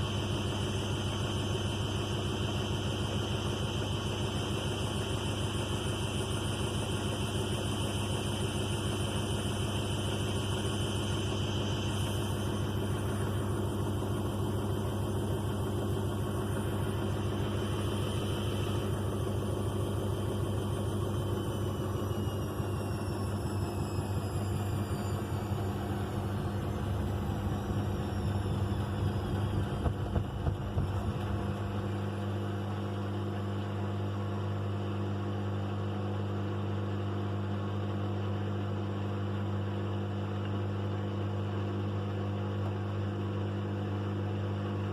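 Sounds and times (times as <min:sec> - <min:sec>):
steady hum: 0:00.0 - 0:39.7
washing machine motor whine: 0:00.0 - 0:44.9
washing machine knocking: 0:12.5 - 0:32.6
drum low rumble: 0:23.3 - 0:33.2.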